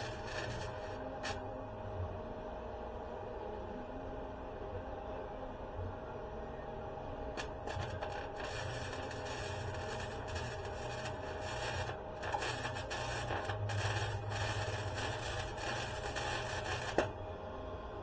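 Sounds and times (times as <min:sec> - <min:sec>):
welding arc crackling: 0:00.0 - 0:01.4, 0:07.4 - 0:17.1
low hum: 0:00.0 - 0:18.0.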